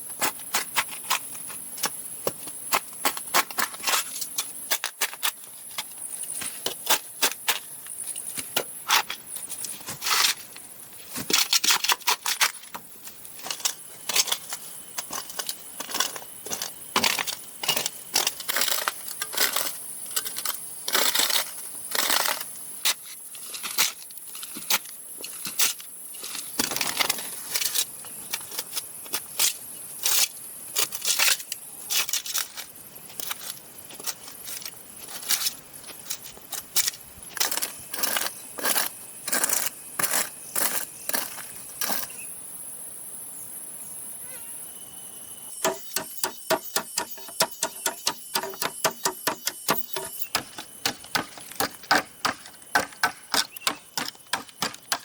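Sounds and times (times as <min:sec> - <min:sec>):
bamboo knocking and clattering: 0:45.6 - 0:55.0.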